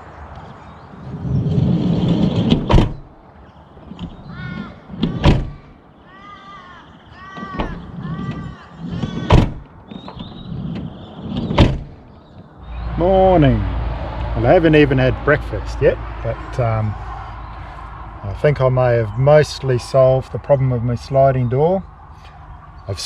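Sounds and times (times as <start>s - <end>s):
van sliding door rumbling shut: 1.1s - 3.2s, 3.9s - 5.7s, 7.5s - 12.1s
crow cawing: 4.2s - 5.2s, 6.0s - 9.3s.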